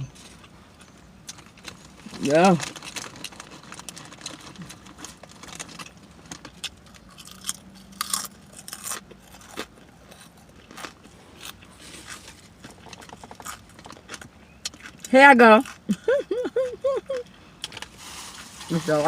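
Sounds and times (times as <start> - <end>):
open-mouth chewing: 6.4 - 17.8.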